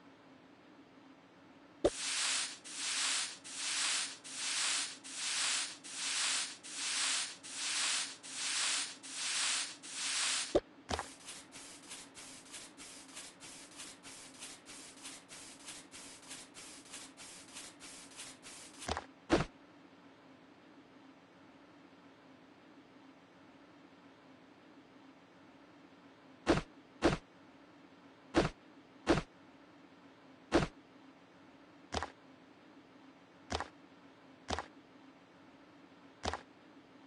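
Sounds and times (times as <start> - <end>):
hissing rubbing strokes: 1.9 - 18.9.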